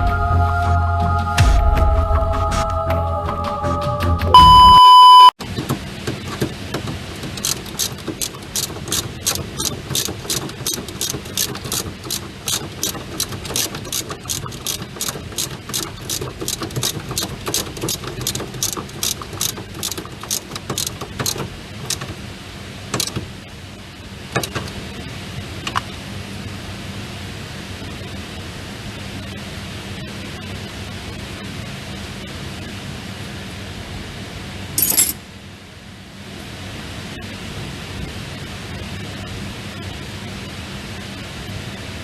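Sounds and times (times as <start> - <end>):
sharp mechanical clicks: 7.3 - 22.1, 23.0 - 23.2.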